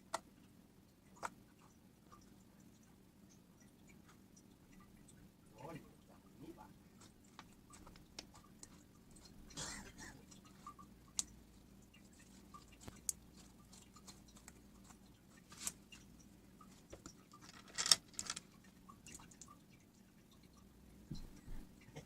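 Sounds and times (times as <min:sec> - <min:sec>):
slime squelching: 0:06.9 - 0:17.4.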